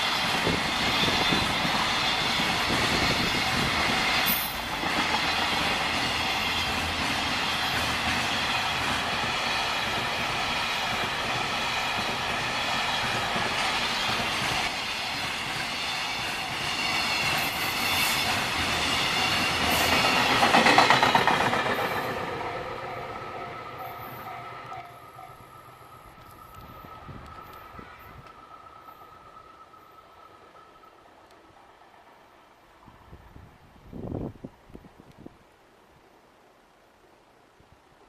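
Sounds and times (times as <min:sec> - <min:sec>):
freight train wheels clattering: 0:00.0 - 0:25.5.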